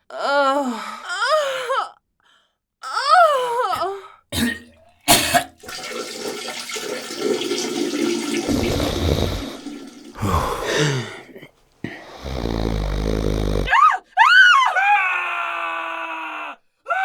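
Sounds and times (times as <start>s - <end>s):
person vomiting: 3.6s - 5.6s, 8.3s - 11.5s
liquid splashing into water: 4.4s - 11.2s.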